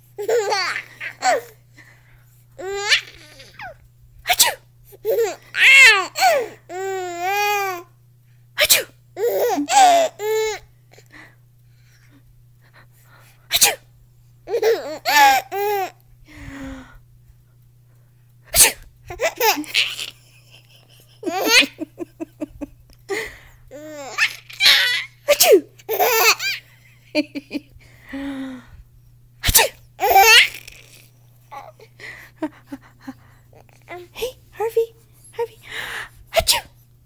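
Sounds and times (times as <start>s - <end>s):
baby giggling: 0.2s - 1.5s, 2.6s - 3.8s, 14.5s - 15.9s, 19.1s - 22.6s, 23.7s - 26.6s, 29.5s - 31.8s
baby sneezing: 4.3s - 4.6s, 8.6s - 9.0s, 13.5s - 13.8s, 18.5s - 18.8s, 24.1s - 25.7s, 29.4s - 31.0s, 36.3s - 36.8s.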